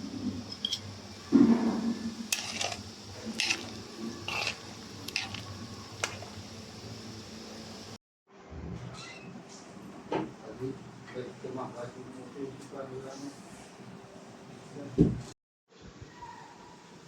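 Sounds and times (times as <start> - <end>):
utensils and cookware clicking: 0.4 - 1.0, 2.3 - 6.4
cookware handling noise: 0.5 - 1.5, 2.3 - 6.4.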